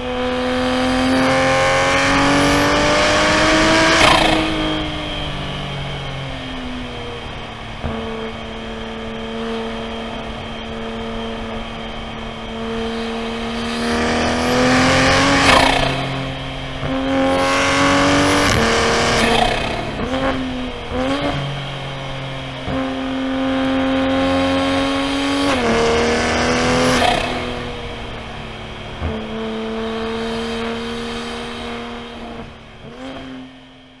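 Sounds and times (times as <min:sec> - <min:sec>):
car engine revving: 0:00.0 - 0:34.0.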